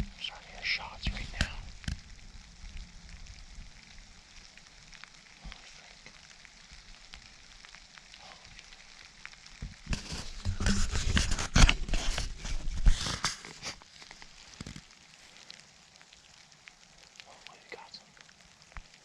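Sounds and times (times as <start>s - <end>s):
faint crackling patter: 0.0s - 19.0s
loud rustling with clicks and knocks: 9.6s - 14.9s.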